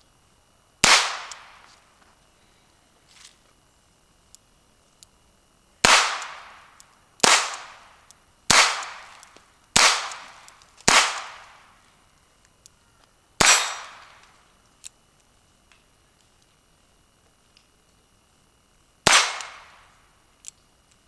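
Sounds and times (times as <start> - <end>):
revolver gunshots with echo: 0.8 - 1.6, 5.8 - 7.9, 8.5 - 9.2, 9.8 - 11.6, 13.4 - 14.2, 19.0 - 19.8.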